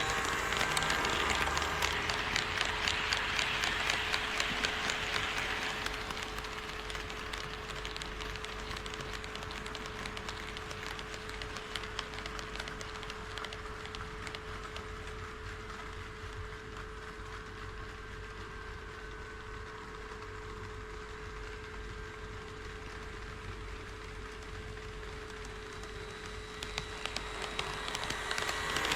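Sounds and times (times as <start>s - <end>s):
steady hum: 0.0s - 10.3s
model train wheels clicking: 0.0s - 17.2s, 22.4s - 28.9s.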